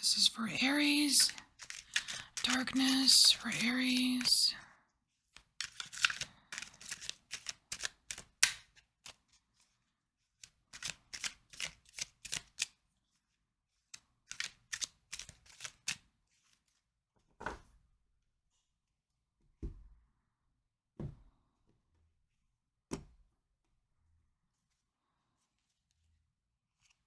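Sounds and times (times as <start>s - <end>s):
playing cards shuffling: 0.1s - 4.5s, 5.4s - 9.3s, 10.4s - 12.8s, 14.2s - 16.0s.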